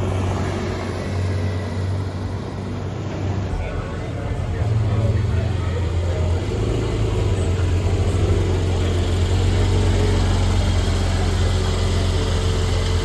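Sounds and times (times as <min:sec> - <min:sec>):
car engine idling: 0:00.0 - 0:13.0.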